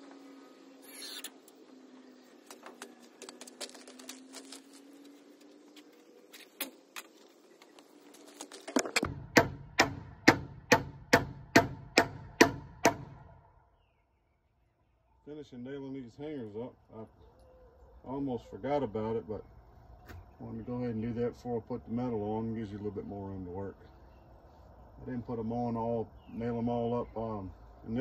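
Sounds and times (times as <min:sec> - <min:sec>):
hammer striking nails into metal: 0:09.0 - 0:13.2.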